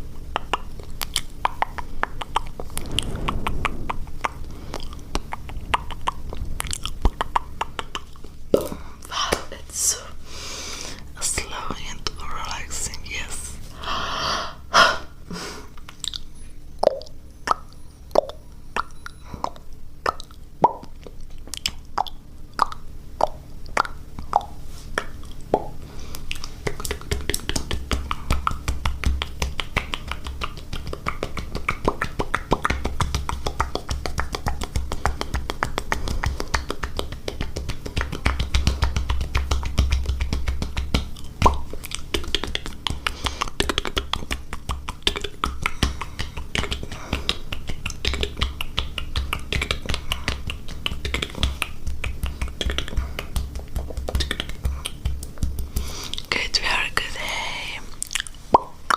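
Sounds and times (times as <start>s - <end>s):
tongue clicks and pops: 0.2s - 2.7s, 15.8s - 58.9s
wet mouth clicking: 0.3s - 2.5s, 15.8s - 58.9s
low rumble: 1.7s - 10.2s.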